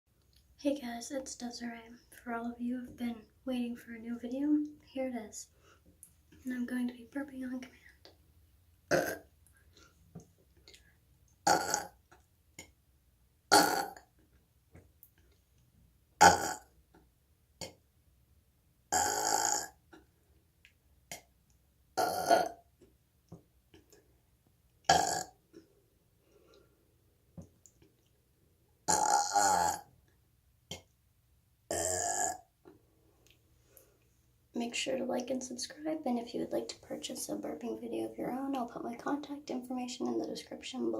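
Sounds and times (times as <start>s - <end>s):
woman burping: 8.9s - 9.3s, 11.4s - 12.0s, 13.5s - 14.0s, 16.2s - 16.7s, 18.9s - 19.8s, 22.0s - 22.6s, 24.9s - 25.3s, 28.9s - 29.9s, 31.7s - 32.4s.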